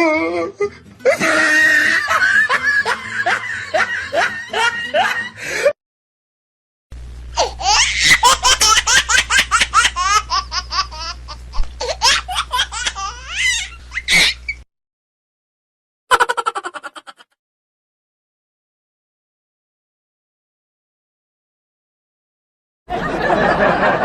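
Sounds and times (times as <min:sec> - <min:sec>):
person laughing: 0:00.5 - 0:05.8, 0:07.4 - 0:14.4, 0:16.1 - 0:17.4
rapid high-pitched laughter: 0:01.0 - 0:05.4, 0:07.4 - 0:14.5, 0:16.1 - 0:17.4
steady low hum: 0:06.9 - 0:14.6.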